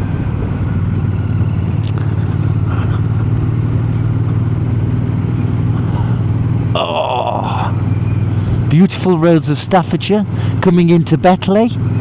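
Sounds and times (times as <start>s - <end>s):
motorcycle engine running: 0.0s - 12.0s.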